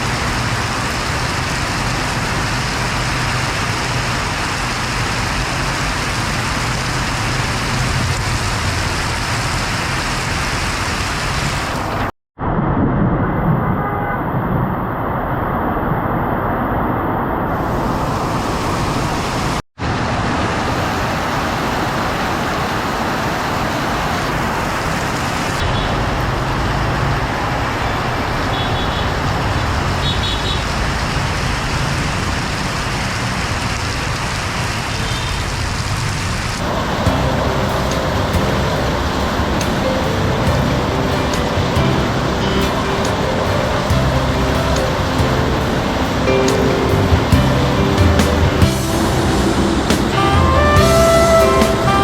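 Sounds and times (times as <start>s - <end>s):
rumble of passing vehicles: 0.0s - 52.0s
short horn beeps: 50.1s - 52.0s.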